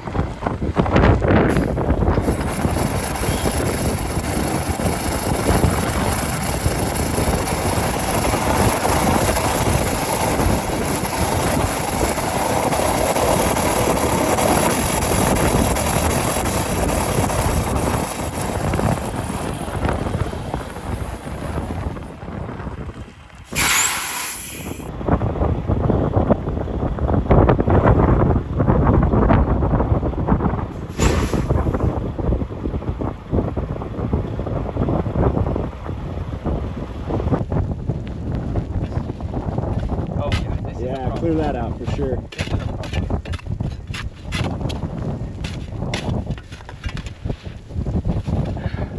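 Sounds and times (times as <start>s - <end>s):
blizzard wind on microphone: 0.0s - 48.9s.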